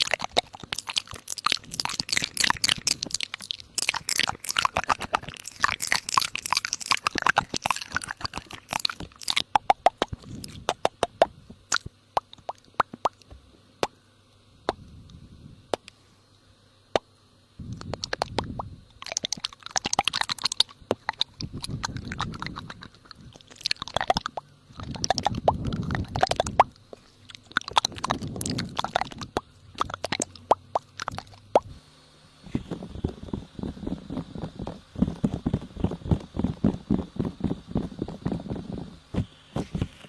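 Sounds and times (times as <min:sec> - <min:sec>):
crunching and crackling: 0:00.0 - 0:13.9, 0:17.7 - 0:31.7.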